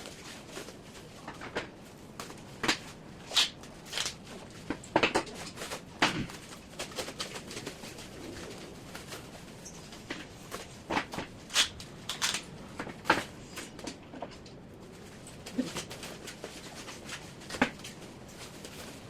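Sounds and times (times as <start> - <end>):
packaging rustling: 3.3 - 4.2, 11.4 - 12.5.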